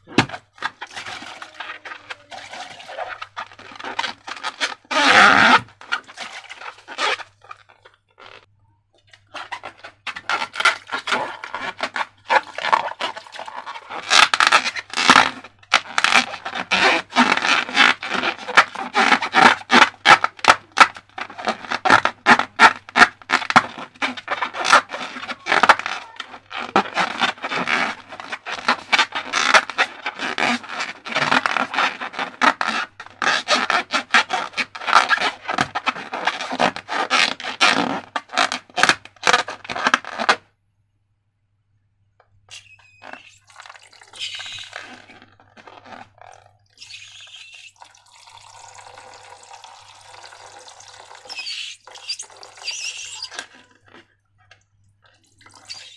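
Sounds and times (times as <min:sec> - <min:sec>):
hands scraping slime and balloons: 0:00.0 - 0:40.5, 0:42.5 - 0:47.8, 0:51.1 - 0:54.2, 0:55.5 - 0:55.9
wet handling and dripping: 0:00.4 - 0:21.2, 0:42.3 - 0:55.9.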